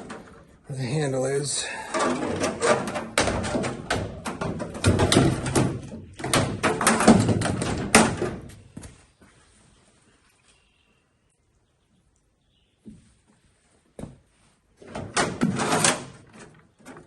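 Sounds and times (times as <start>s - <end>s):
fish tape rattling against metal: 1.8s - 8.4s.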